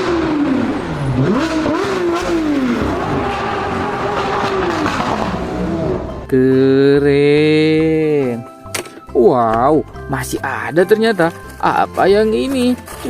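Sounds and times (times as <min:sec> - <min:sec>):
sports car engine revving: 0:00.0 - 0:06.3.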